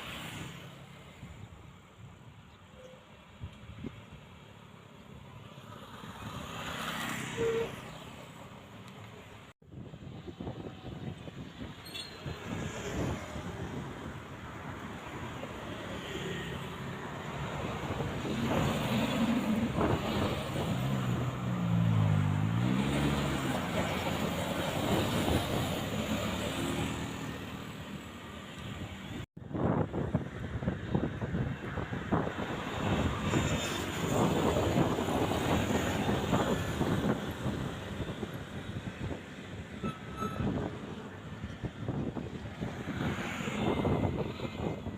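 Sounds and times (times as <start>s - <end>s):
road traffic: 0.0s - 44.9s
wind buffeting microphone: 9.6s - 15.4s, 16.8s - 27.0s, 28.8s - 44.9s.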